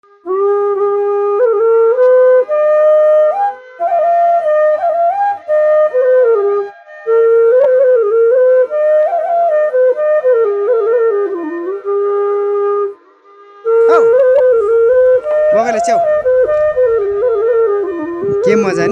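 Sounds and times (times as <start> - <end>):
bamboo flute melody: 0.1 - 18.9.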